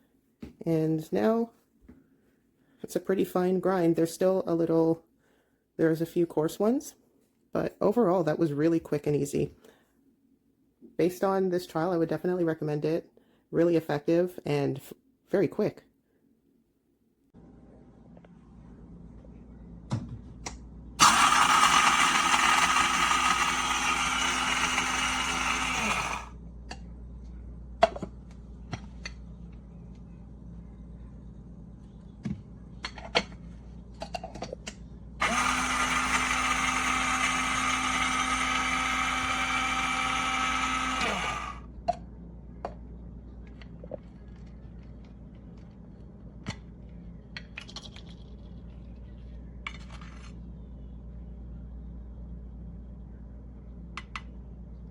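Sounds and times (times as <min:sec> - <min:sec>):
electric grinder motor whirring: 0:21.0 - 0:26.3, 0:35.2 - 0:41.6.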